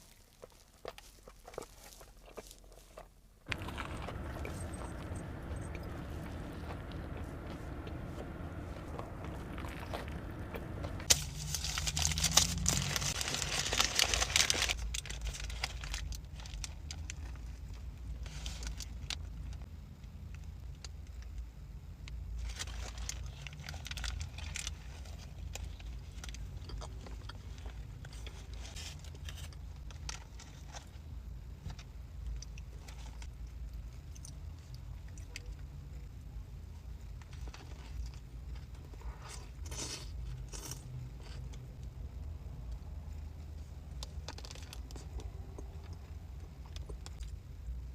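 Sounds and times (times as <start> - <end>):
crunchy bites and chewing: 0.0 - 17.4, 37.5 - 41.6
steady low hum: 3.2 - 47.9
food wrapper crinkling: 11.0 - 19.4, 22.4 - 30.8.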